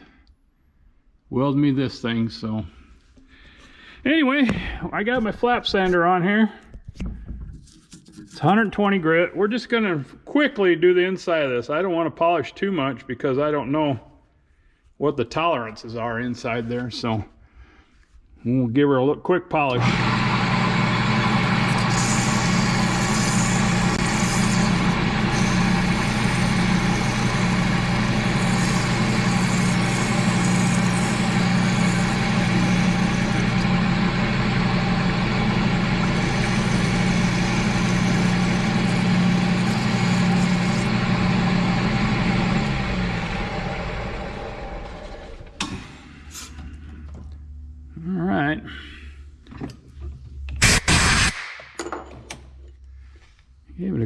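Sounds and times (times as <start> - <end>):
drill press running: 19.7 - 47.1
flap sander polishing steel: 19.8 - 43.4.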